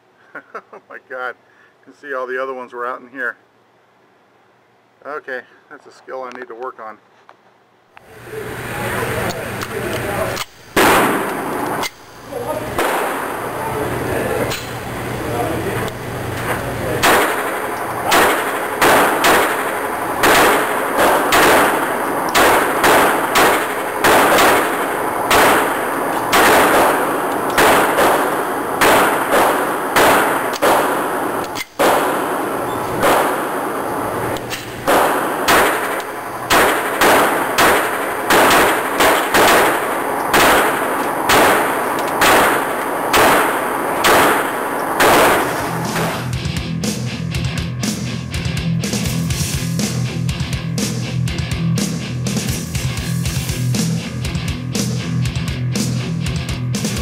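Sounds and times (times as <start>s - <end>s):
pistol shots: 10.3s - 46.3s.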